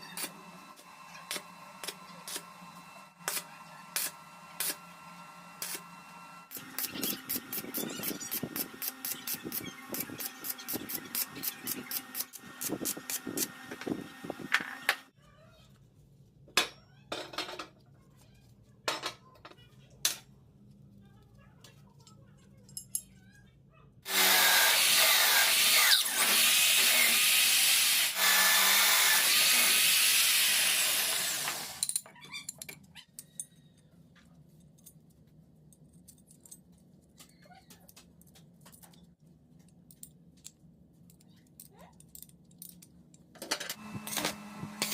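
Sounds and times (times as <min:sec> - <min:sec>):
power tool running: 0:00.0 - 0:15.1, 0:24.1 - 0:31.8, 0:43.8 - 0:44.9.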